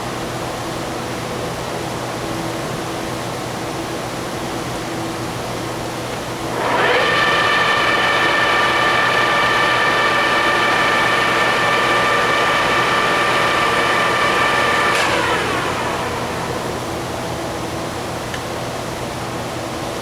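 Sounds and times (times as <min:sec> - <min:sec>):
lathe spindle whine: 0:06.4 - 0:18.7.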